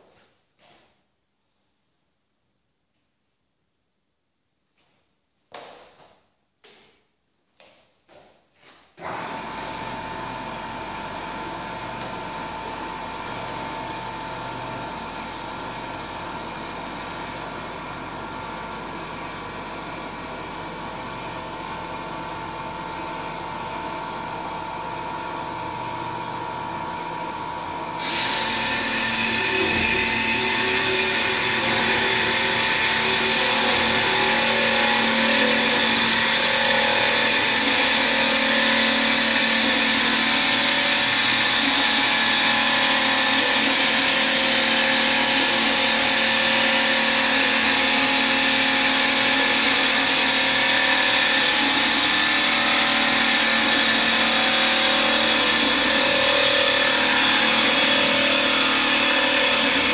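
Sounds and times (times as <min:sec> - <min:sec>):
band saw humming: 0:09.0 - 0:59.9.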